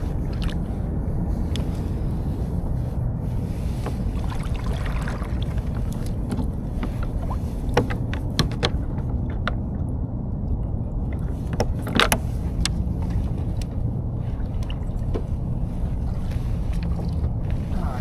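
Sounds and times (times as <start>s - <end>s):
wind on microphone: 0.0s - 18.0s
knocks and clicks from boat: 3.4s - 10.0s, 11.0s - 18.0s.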